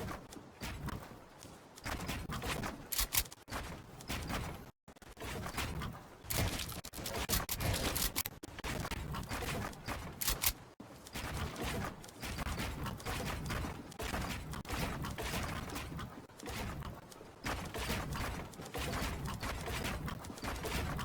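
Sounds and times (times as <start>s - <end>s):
rustling: 6.3s - 13.2s
plastic and metal rattles: 6.3s - 21.0s.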